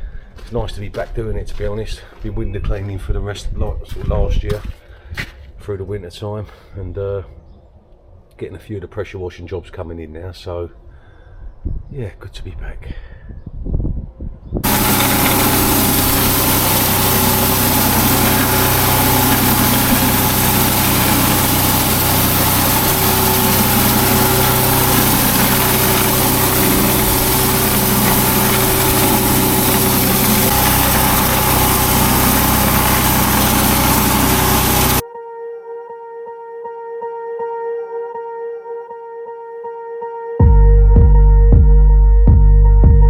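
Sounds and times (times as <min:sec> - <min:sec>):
hiss of water spray: 0:14.6 - 0:35.0
pressure washer engine: 0:14.6 - 0:35.0.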